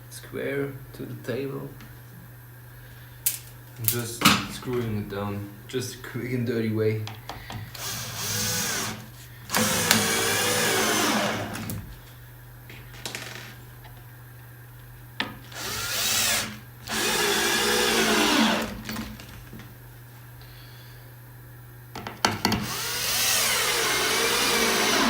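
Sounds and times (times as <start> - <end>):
power drill driving screws: 7.8 - 11.8, 15.5 - 19.0, 22.6 - 25.0.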